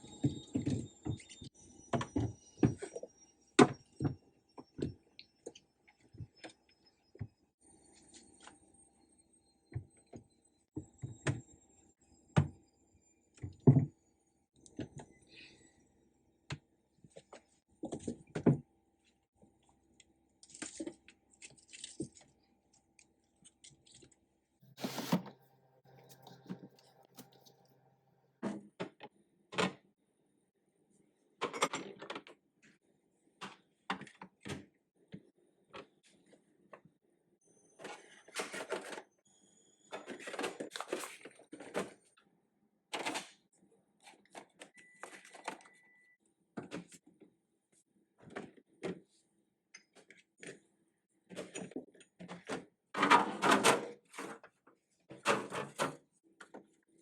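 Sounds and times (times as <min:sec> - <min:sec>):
items knocking and clattering: 0:24.7 - 0:27.6
rustling: 0:24.7 - 0:27.8.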